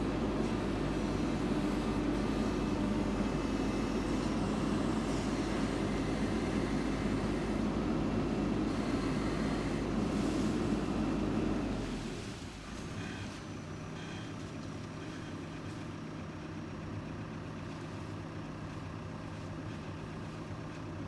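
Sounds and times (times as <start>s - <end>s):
backhoe diesel engine under load: 0.0s - 21.0s.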